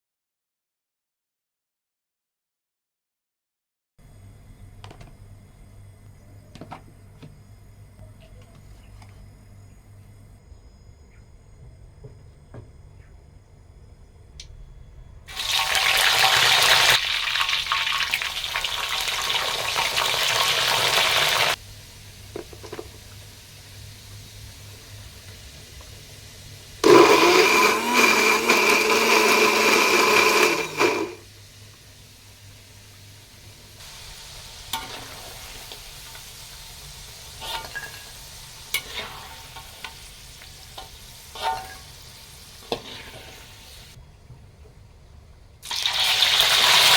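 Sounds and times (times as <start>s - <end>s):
blender running: 15.3s - 21.6s, 26.8s - 31.3s, 45.7s - 46.9s
clinks of kitchen work: 22.3s - 23.2s, 37.3s - 44.8s.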